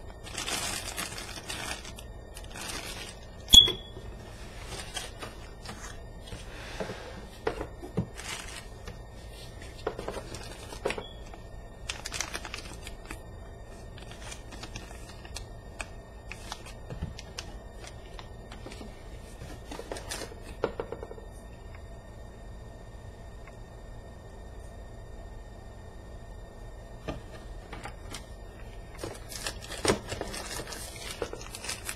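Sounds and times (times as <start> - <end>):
packaging rustling and crinkling: 0.1 - 20.7, 27.8 - 31.9.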